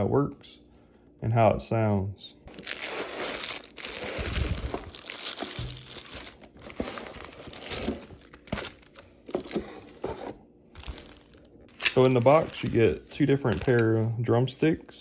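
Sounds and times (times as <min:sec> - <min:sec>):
packaging rustling and crinkling: 0:02.5 - 0:14.0.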